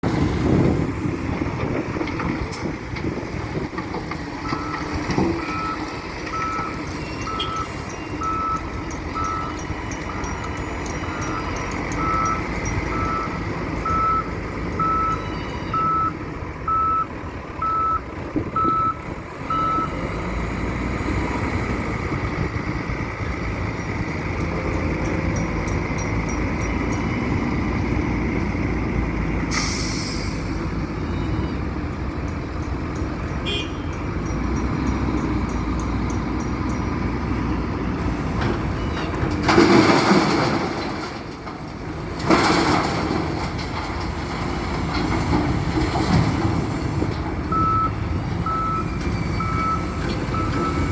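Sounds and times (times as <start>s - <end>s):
diesel engine running: 0.0s - 50.9s
reversing alarm beeping: 4.4s - 18.0s, 18.6s - 20.0s, 47.5s - 50.9s.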